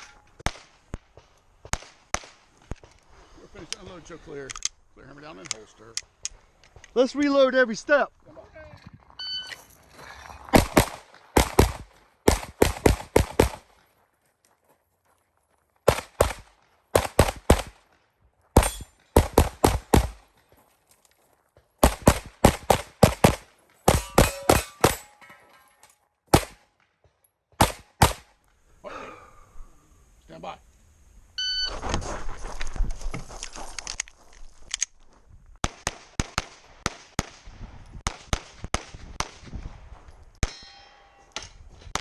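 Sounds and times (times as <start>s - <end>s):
rapid pistol fire: 10.6s - 13.7s, 15.9s - 17.8s, 18.6s - 20.2s, 21.8s - 25.1s, 26.3s - 26.6s, 27.6s - 28.3s.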